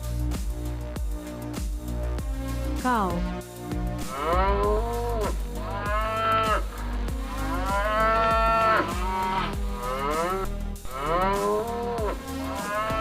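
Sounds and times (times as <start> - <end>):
cow mooing: 4.0 - 13.0.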